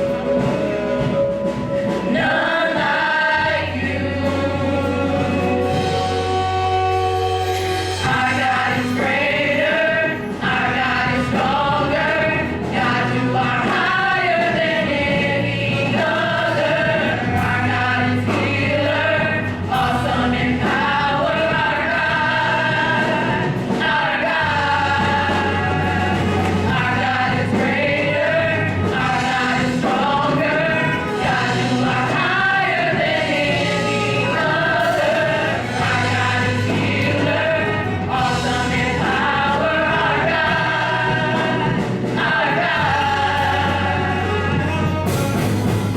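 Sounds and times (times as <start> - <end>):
band playing: 0.0 - 45.9
choir singing: 0.0 - 45.9
steady bass line: 0.0 - 45.9.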